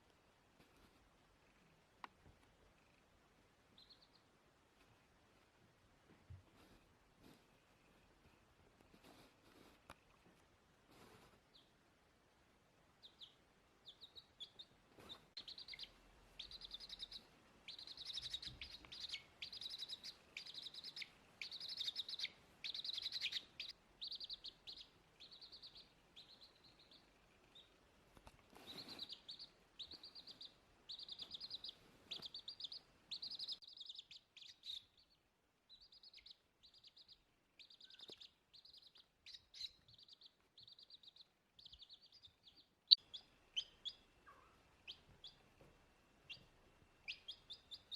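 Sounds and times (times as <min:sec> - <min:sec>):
chick peeping: 0:03.7 - 0:04.3, 0:10.9 - 0:11.8, 0:13.0 - 0:47.9.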